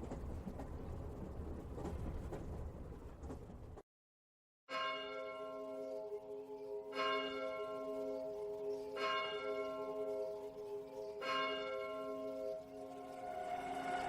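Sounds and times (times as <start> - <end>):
bell-like chime tones: 4.7 - 14.0.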